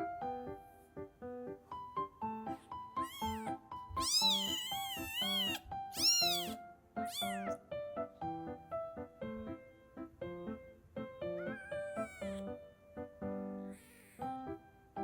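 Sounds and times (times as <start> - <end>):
piano music: 0.0 - 15.0
kitten mewing: 2.9 - 7.6, 11.3 - 12.6, 13.6 - 14.4.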